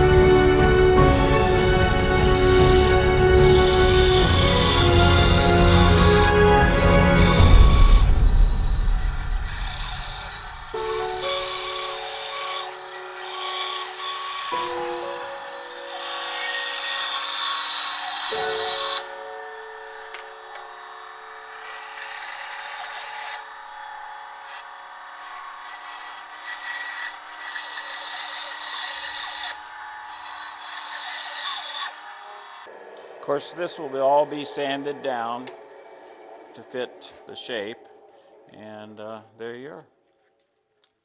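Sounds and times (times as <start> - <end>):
background music: 0.0 - 22.4, 32.7 - 40.2
band saw cutting wood: 0.0 - 39.8.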